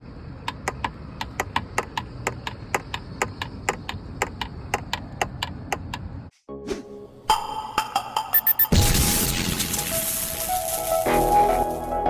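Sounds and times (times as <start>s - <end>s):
low road rumble: 0.0s - 6.3s.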